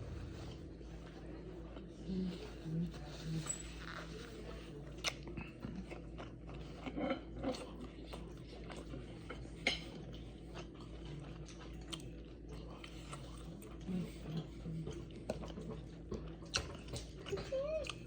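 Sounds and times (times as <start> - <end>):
person chewing and biting food: 4.8 - 18.0.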